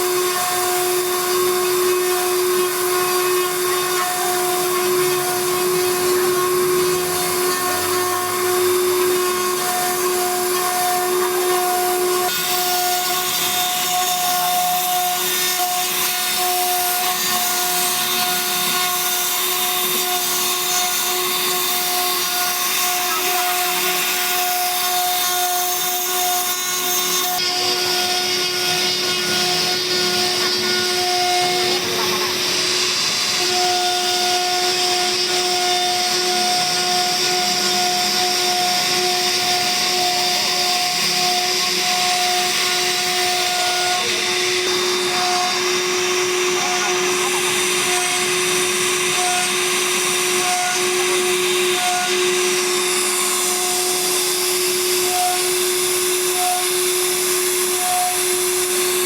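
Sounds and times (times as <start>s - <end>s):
router spindle whine: 0.0s - 59.0s.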